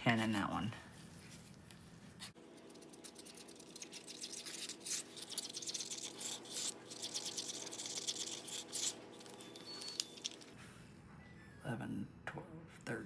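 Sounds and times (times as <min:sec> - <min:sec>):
stick scraping in plastic cup: 0:02.6 - 0:10.6.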